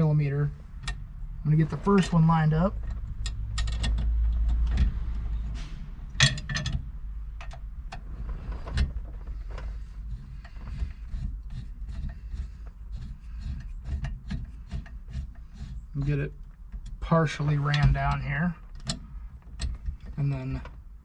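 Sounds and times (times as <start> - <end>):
small metal clicks and taps: 2.8 - 5.0, 6.2 - 8.0.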